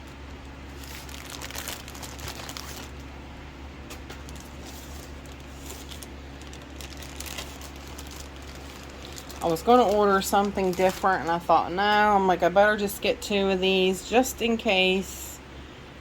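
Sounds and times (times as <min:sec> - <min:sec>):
packaging crinkling: 0:00.0 - 0:03.2, 0:03.8 - 0:12.0.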